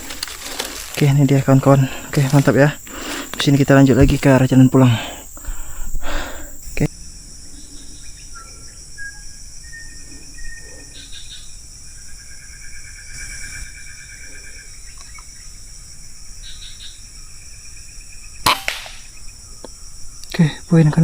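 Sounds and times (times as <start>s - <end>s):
insects droning: 0.0s - 21.0s
bird whistles and chirps: 8.0s - 11.2s.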